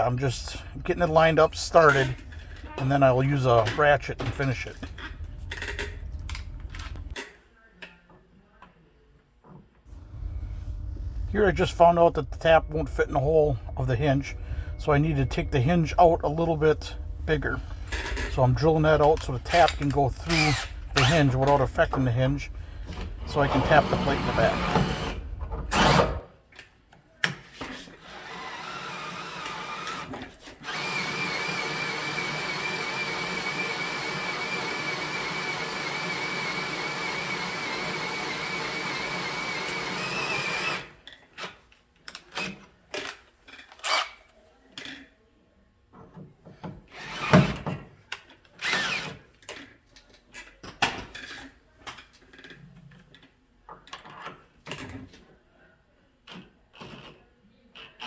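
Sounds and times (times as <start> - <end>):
electric drill whining: 19.4 - 21.6, 22.5 - 26.0, 28.0 - 40.9, 48.6 - 49.2.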